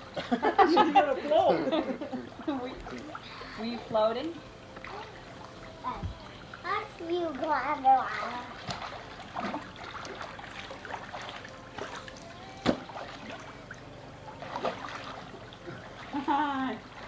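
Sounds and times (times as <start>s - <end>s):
pool water splashing and lapping: 0.0s - 17.0s
child's voice: 4.9s - 8.6s
sharp water slap: 8.6s - 10.3s, 11.8s - 13.5s, 14.4s - 15.2s.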